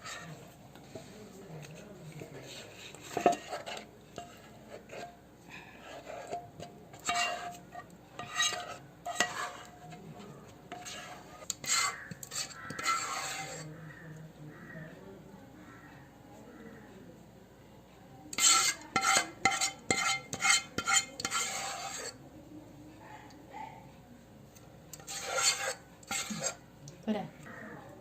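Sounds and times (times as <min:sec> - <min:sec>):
utensil scraping a pan: 0:00.0 - 0:13.8, 0:18.3 - 0:22.2, 0:24.9 - 0:26.7
utensil knocking on pan: 0:18.4 - 0:21.6.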